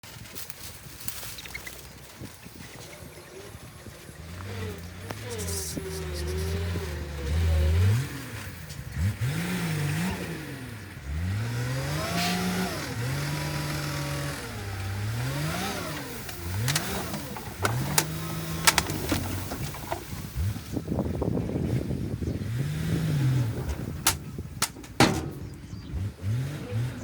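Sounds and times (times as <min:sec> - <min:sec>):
engine revving: 0:04.2 - 0:27.0
sharp knocks: 0:24.0 - 0:26.0.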